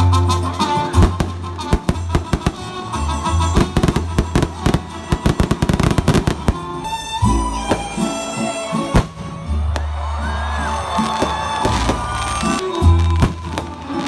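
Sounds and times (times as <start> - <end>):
music with steady bass line: 0.0 - 10.0
fireworks cracking and banging: 0.4 - 14.0.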